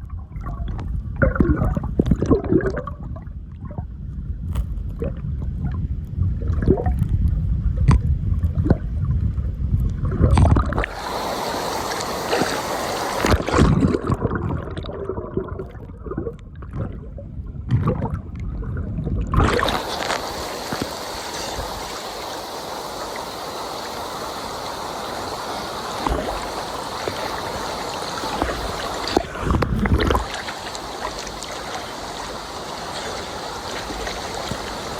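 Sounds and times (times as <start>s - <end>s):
waterfall rushing: 10.8s - 13.7s, 19.4s - 34.9s
swimmer splashing: 10.8s - 14.3s, 19.4s - 34.9s.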